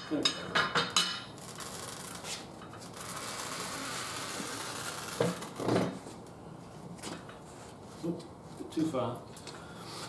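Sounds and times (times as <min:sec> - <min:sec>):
tyre machine buzzing whir: 0:01.4 - 0:05.8.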